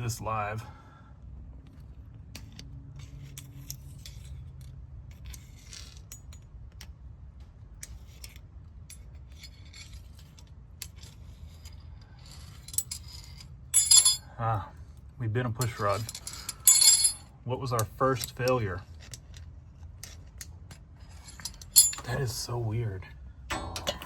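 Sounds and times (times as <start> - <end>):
low steady hum: 0.0 - 24.0
light metal clicks and clinks: 12.5 - 14.3, 20.0 - 22.4, 23.5 - 24.0.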